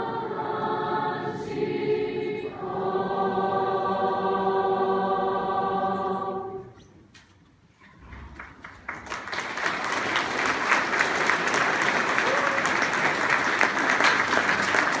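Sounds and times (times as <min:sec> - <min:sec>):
audience applause: 0:08.4 - 0:15.0.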